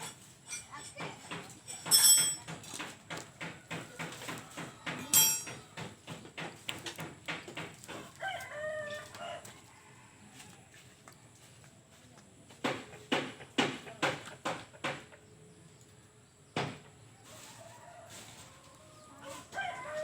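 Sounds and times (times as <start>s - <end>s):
sharp loud knocks: 12.6s - 15.1s.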